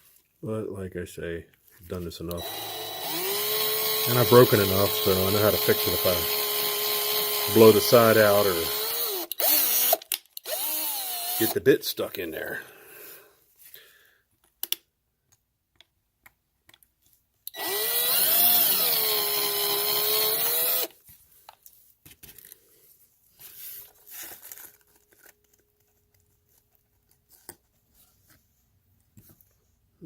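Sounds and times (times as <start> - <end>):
small power drill whining: 2.4 - 11.6, 17.5 - 21.0.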